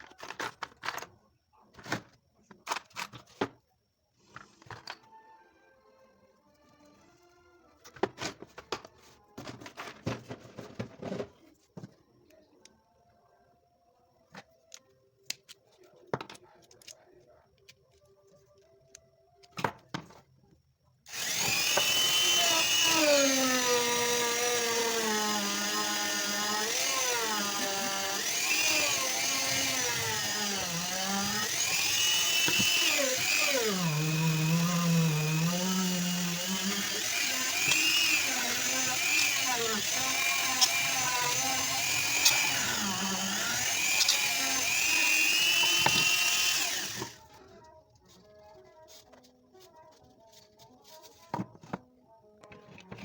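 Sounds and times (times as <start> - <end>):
handheld power tool whining: 21.1 - 47.4.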